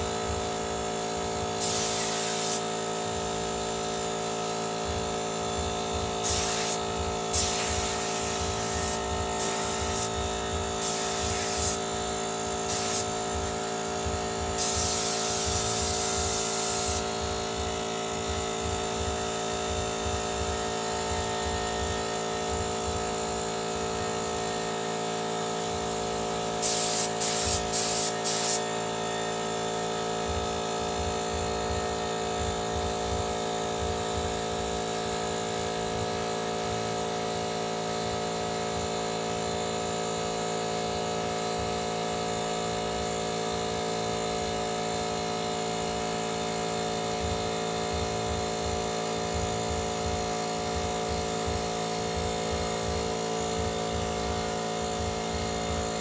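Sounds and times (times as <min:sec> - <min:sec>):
air compressor running: 0:00.0 - 0:56.0
air hissing: 0:01.6 - 0:02.8, 0:06.2 - 0:10.2, 0:10.8 - 0:11.8, 0:12.6 - 0:13.2, 0:14.6 - 0:17.1, 0:26.6 - 0:28.7.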